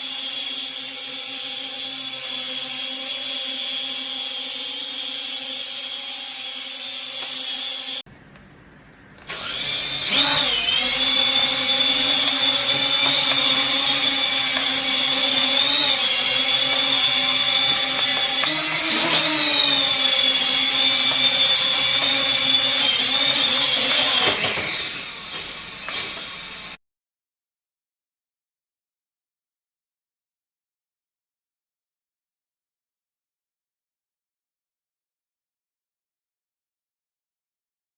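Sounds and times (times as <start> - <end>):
toy drone propellers whining: 0.0 - 8.0, 9.3 - 26.8.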